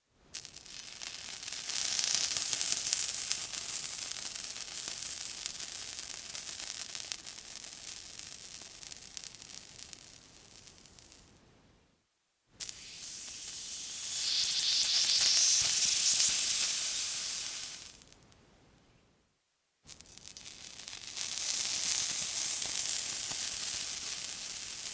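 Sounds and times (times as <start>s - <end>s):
water sizzling on hot surface: 0.4s - 11.3s, 12.6s - 18.2s, 19.9s - 24.9s.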